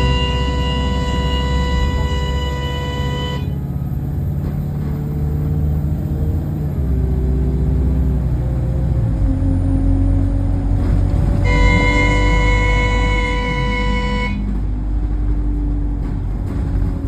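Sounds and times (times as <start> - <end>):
steady horn-like tone: 0.0 - 3.6, 11.4 - 14.6
bus engine rumbling: 0.0 - 17.0.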